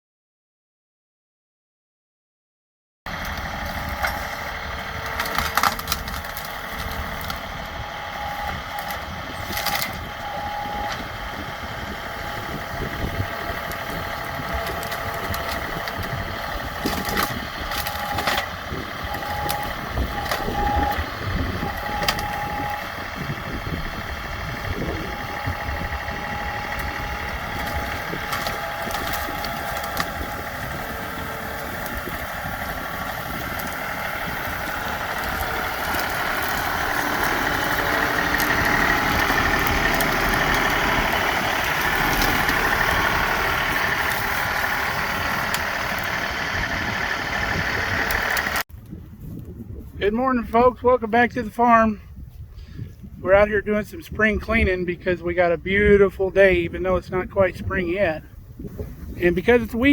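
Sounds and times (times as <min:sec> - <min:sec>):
engine idling: 0:03.1 - 0:48.7.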